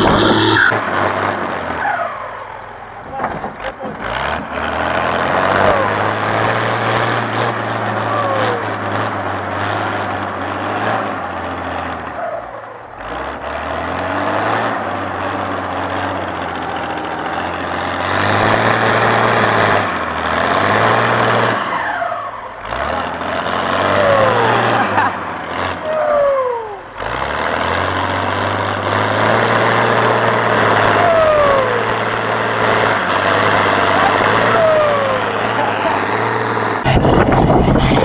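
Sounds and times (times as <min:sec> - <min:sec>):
diesel engine revving: 0:00.0 - 0:02.1, 0:03.2 - 0:38.0.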